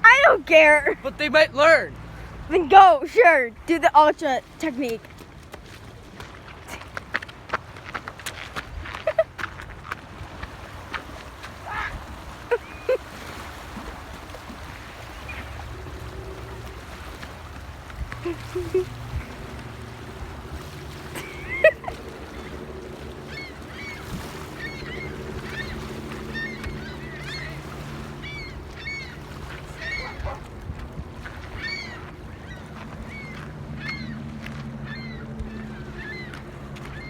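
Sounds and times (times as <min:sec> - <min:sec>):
gulls calling: 0:00.0 - 0:05.1, 0:10.6 - 0:37.0
steady low hum: 0:11.5 - 0:37.0.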